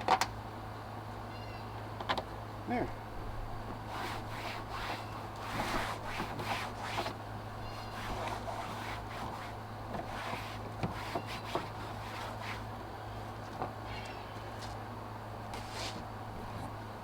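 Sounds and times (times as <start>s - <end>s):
steady low hum: 0.0s - 17.0s
plastic trim rubbing and scraping: 3.7s - 12.7s.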